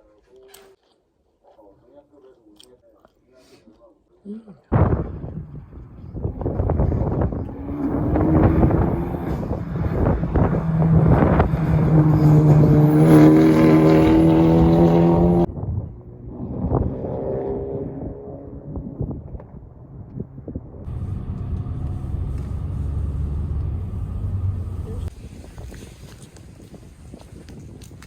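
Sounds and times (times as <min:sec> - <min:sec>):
car engines revving: 0:06.2 - 0:25.1
quiet engine running: 0:20.9 - 0:25.1.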